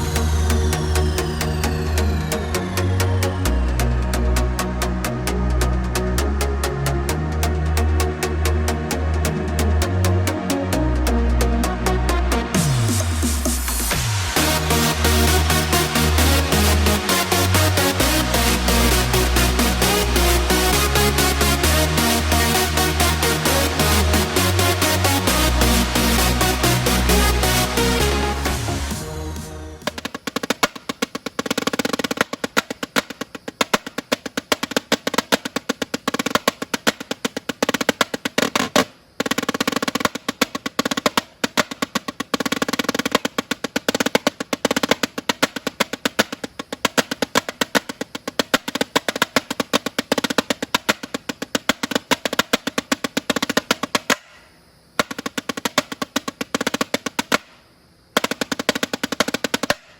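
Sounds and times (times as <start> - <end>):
snare drum rolls: 12.6 - 54.4, 55.0 - 57.5, 58.1 - 59.9.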